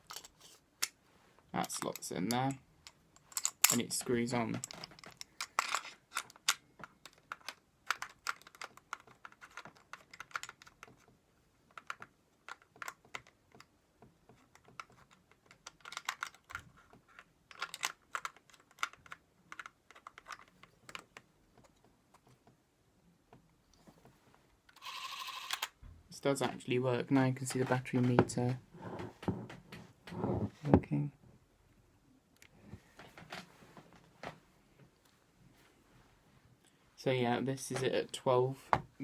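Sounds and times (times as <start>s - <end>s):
hands handling plastic camera: 0.0s - 1.0s, 4.6s - 11.1s, 14.3s - 22.4s.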